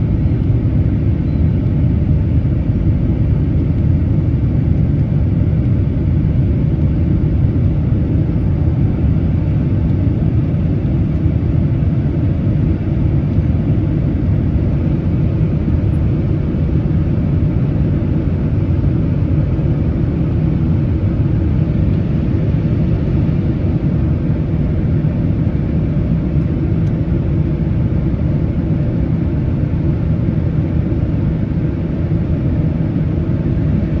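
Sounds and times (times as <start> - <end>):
jet engines rumbling: 0.0 - 34.0.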